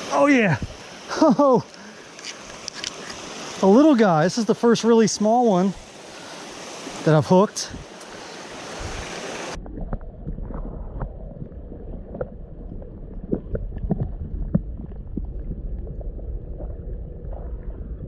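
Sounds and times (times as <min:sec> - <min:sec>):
mountain stream rushing: 0:00.0 - 0:09.6
gurgles and clicks: 0:08.9 - 0:18.0
muffled low rumble: 0:09.6 - 0:18.0.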